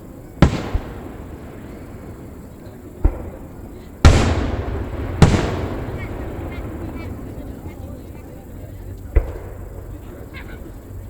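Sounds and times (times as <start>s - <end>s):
fireworks bursting: 0.0s - 11.0s.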